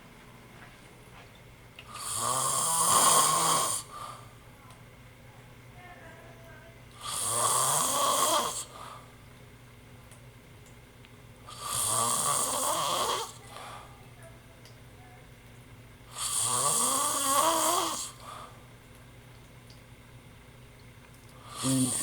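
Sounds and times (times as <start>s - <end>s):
loud snoring: 1.9s - 4.0s, 7.0s - 8.8s, 11.5s - 13.5s, 16.1s - 18.2s, 21.4s - 22.0s.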